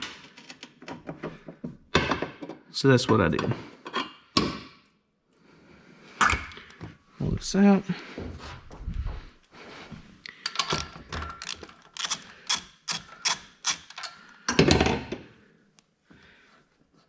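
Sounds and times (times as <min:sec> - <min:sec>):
socket ratchet clicking: 0:11.4 - 0:14.1.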